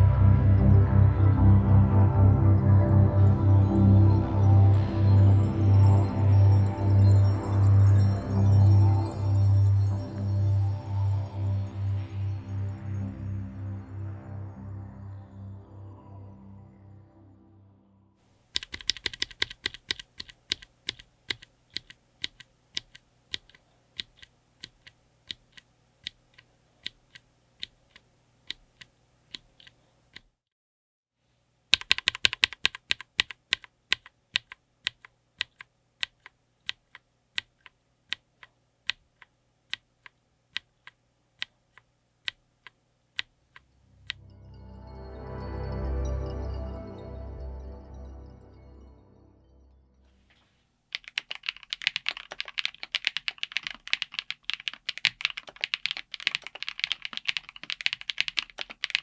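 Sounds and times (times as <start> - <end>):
typing on mechanical keyboard: 18.4 - 30.3, 31.7 - 43.6, 50.9 - 59.0.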